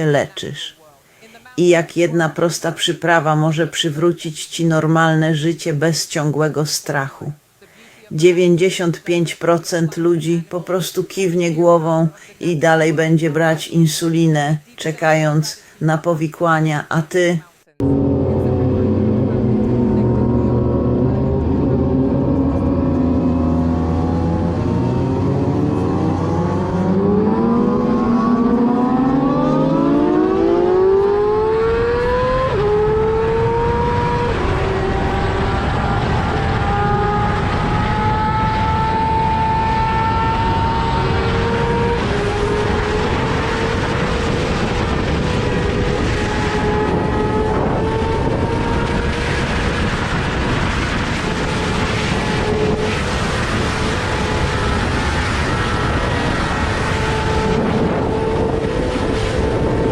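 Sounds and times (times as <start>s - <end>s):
engine accelerating: 17.8s - 59.9s
heavy rushing noise: 17.8s - 59.9s.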